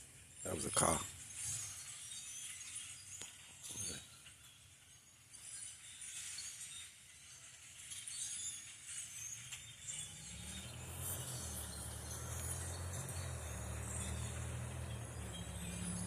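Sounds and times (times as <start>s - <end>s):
vehicle engine rumble: 9.5s - 16.0s.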